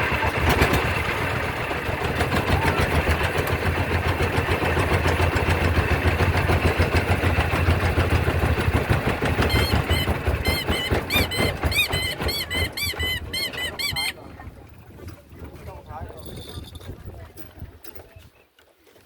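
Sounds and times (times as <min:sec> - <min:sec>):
engine running: 0:00.0 - 0:16.9
high arched squeaks: 0:09.4 - 0:14.2.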